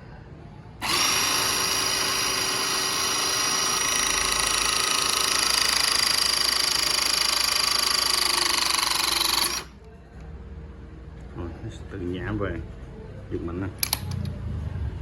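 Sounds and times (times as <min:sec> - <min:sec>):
hydraulic crimping tool whine: 0:00.8 - 0:09.7.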